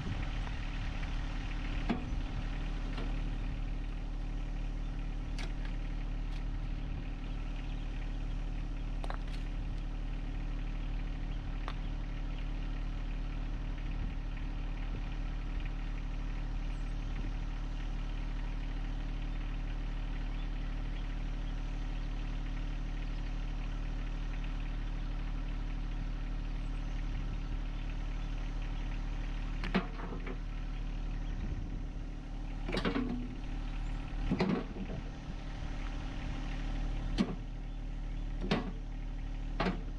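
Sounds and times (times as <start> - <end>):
tractor diesel engine idling: 0.0 - 39.9
knocks and clanks: 34.2 - 35.1, 38.4 - 38.8, 39.6 - 39.9.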